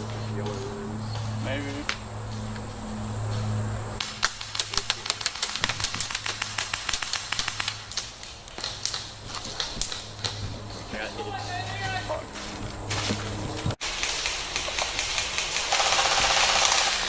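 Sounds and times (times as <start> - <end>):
airsoft gun firing shots: 4.0 - 8.0, 13.9 - 17.0.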